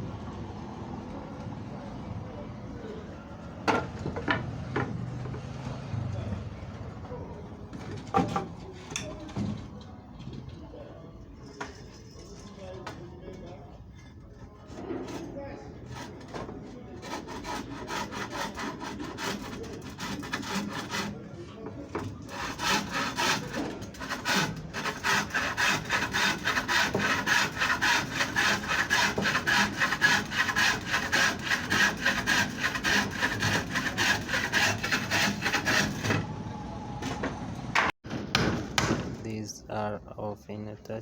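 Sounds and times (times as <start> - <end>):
handsaw cutting wood: 15.9 - 21.2, 22.0 - 36.2.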